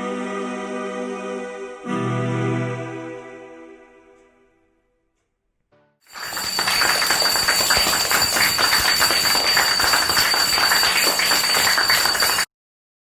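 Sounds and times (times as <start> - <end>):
crowd applause: 6.1 - 12.5.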